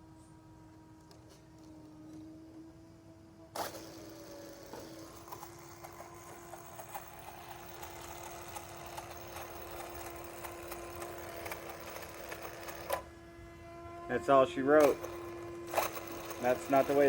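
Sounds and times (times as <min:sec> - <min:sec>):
drivetrain whine: 0:00.0 - 0:17.0
rapid clicking and rattling: 0:03.6 - 0:13.0, 0:14.8 - 0:17.0.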